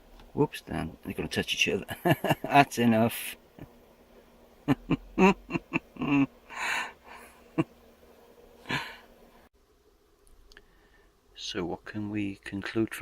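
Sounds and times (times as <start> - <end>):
faint steady hum: 0.0 - 13.0
man grunting and chuckling: 4.7 - 7.7
breathy exhalations: 6.5 - 7.4, 8.6 - 9.1.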